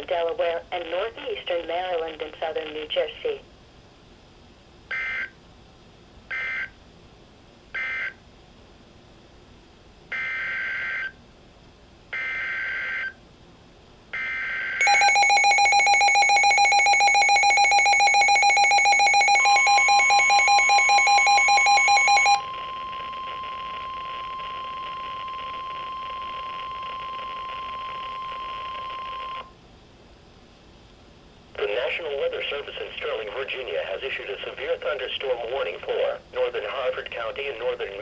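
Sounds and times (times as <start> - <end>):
steady warning alarm tone: 4.9 - 5.4, 6.3 - 6.8, 7.8 - 8.2, 10.1 - 11.2, 12.1 - 13.2, 14.2 - 29.5
rapidly pulsing alert beep: 14.4 - 29.4.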